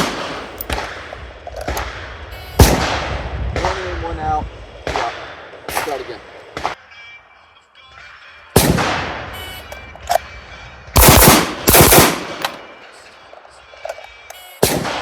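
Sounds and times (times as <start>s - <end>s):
gunshots: 0.0s - 6.8s, 8.6s - 9.5s, 11.0s - 12.8s, 14.6s - 15.0s.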